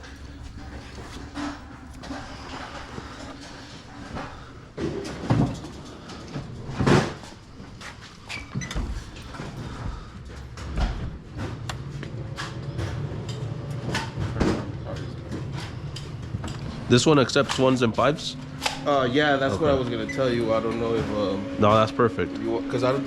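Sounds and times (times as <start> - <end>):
low steady hum: 0.0 - 8.1.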